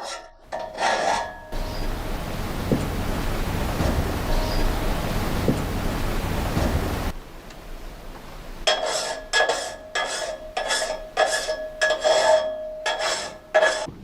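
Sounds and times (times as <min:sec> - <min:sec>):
file stroking saw blade: 0:00.0 - 0:01.6, 0:08.7 - 0:13.9
steel blade ringing: 0:04.2 - 0:05.1, 0:08.7 - 0:13.9.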